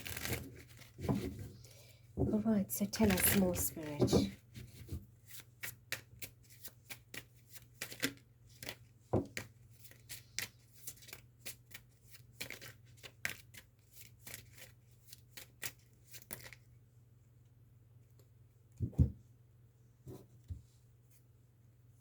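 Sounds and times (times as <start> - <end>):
cards being shuffled: 0.0 - 1.3, 3.0 - 4.4, 5.3 - 16.6.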